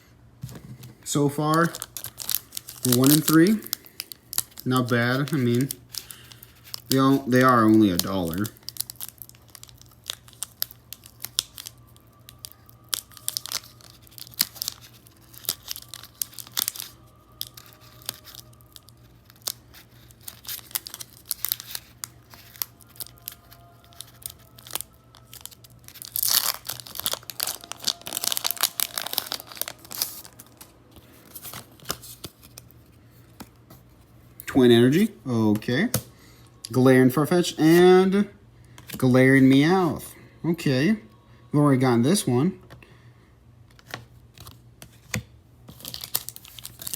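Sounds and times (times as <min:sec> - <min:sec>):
foil wrapper crinkling: 0:00.4 - 0:35.1, 0:45.7 - 0:46.9.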